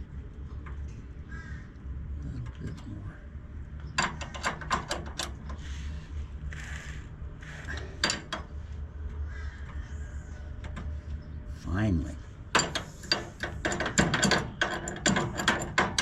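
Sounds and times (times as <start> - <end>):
raspy scrapes: 5.5 - 8.9.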